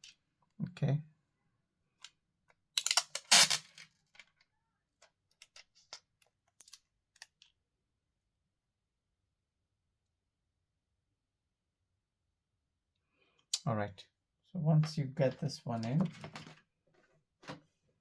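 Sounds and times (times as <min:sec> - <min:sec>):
small parts clicking: 0:02.8 - 0:03.8.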